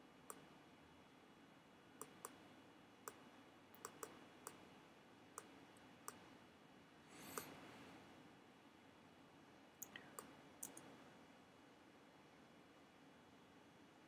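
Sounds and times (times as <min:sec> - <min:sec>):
quiet room hiss: 0:00.0 - 0:14.0
computer mouse clicking: 0:02.0 - 0:02.4, 0:03.1 - 0:04.6, 0:05.4 - 0:06.3, 0:07.2 - 0:07.6, 0:09.8 - 0:10.9.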